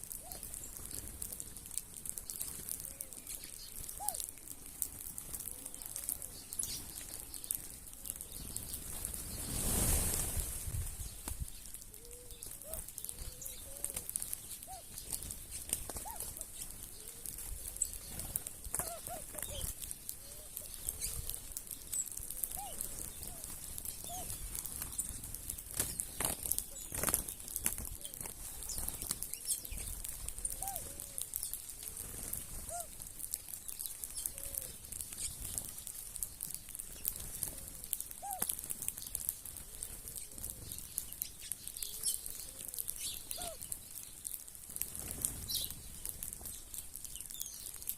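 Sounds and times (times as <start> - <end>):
sharp ticks and wing flutters: 0.0 - 47.9
birds calling low: 2.2 - 4.4, 5.1 - 47.8
steady high hiss: 5.2 - 36.4.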